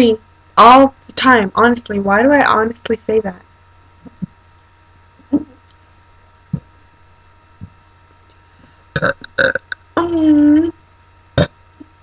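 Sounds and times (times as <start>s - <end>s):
woman burping: 9.0s - 9.7s.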